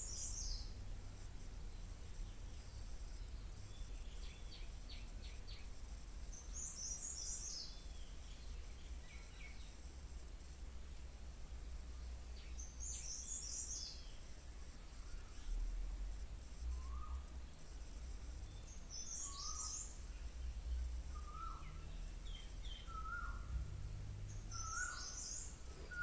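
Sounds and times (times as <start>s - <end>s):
small birds chirping: 0.0s - 0.8s, 1.7s - 9.9s, 12.2s - 15.6s, 16.5s - 26.0s
steady low hum: 0.0s - 26.0s.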